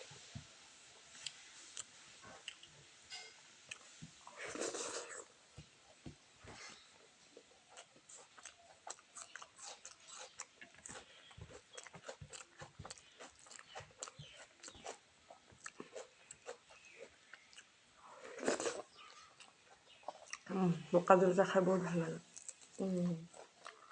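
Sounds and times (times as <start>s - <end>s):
wet chewing and lip-smacking: 7.4s - 17.8s, 18.4s - 20.5s.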